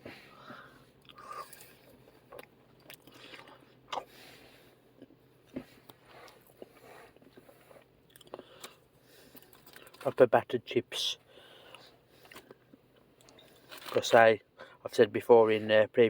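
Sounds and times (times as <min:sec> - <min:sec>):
person chewing chips: 0:01.0 - 0:04.3, 0:05.0 - 0:10.2, 0:11.6 - 0:14.0.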